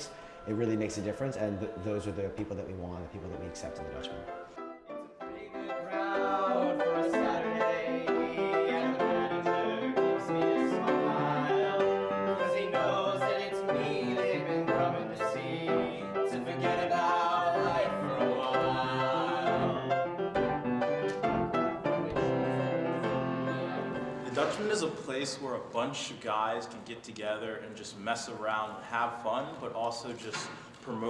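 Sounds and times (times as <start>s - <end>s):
male a cappella group singing: 0.0s - 3.4s, 5.2s - 20.5s, 21.5s - 24.9s.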